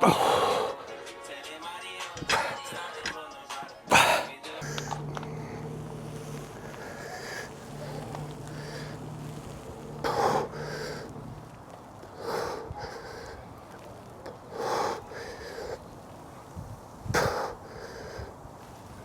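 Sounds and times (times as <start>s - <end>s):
person breathing hard: 0.0s - 1.0s, 3.9s - 16.0s, 17.0s - 18.5s.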